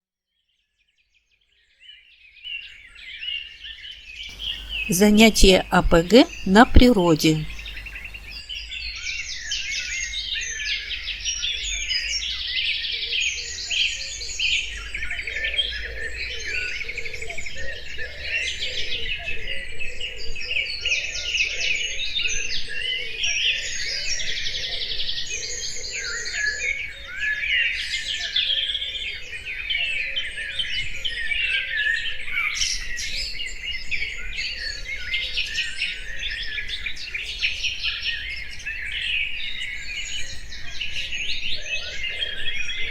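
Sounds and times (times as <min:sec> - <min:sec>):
songbirds chirping and trilling: 0:04.1 - 0:05.0.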